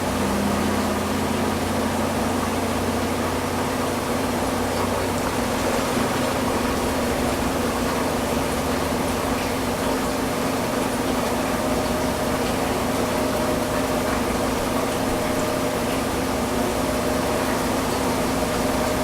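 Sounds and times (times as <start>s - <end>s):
washing machine drum spinning: 0.0s - 19.0s.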